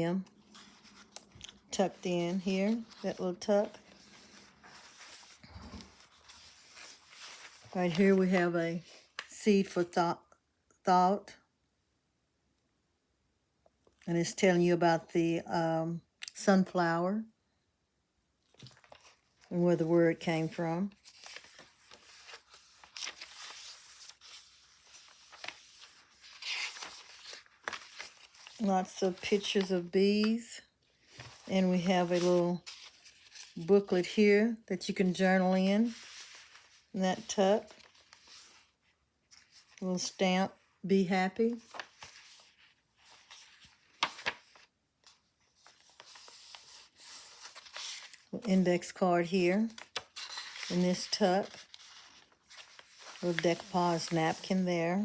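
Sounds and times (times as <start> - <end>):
paper pages rustling: 0.2 - 9.4, 18.5 - 34.2, 35.2 - 40.2, 41.4 - 54.7.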